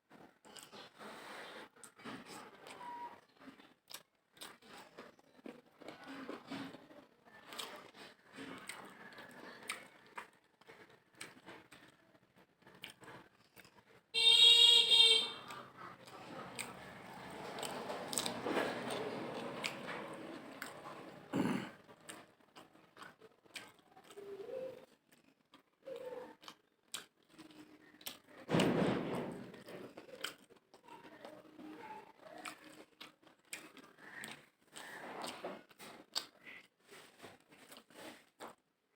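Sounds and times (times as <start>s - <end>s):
person chewing food: 0.4s - 6.8s, 7.4s - 14.1s, 15.4s - 28.4s, 29.7s - 31.3s, 32.2s - 38.6s
soft mouth and lip clicks: 32.3s - 38.6s.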